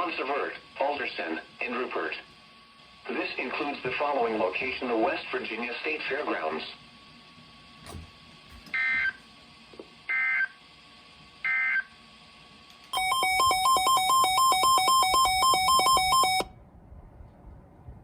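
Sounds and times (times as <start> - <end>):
digital data tone bursts: 13.0 - 16.5
fast two-tone electronic beeping: 13.0 - 16.5.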